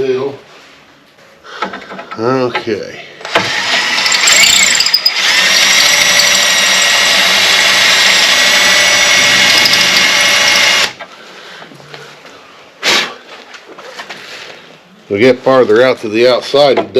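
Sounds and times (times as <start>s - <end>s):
power drill whining: 3.2s - 11.0s.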